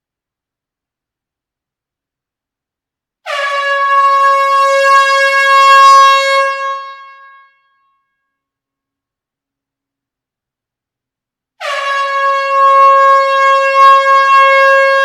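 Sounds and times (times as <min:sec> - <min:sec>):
air horn blast: 0:03.2 - 0:07.6, 0:11.6 - 0:15.0.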